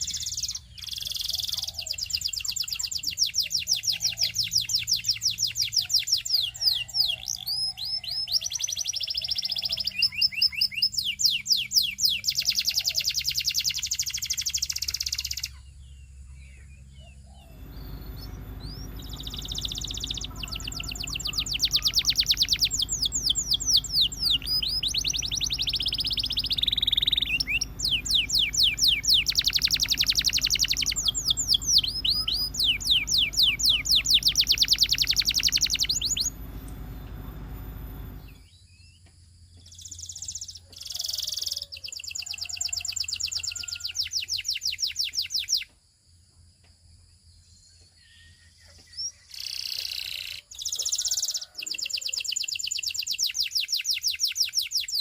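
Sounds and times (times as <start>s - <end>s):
canary singing trills: 0.0s - 38.4s.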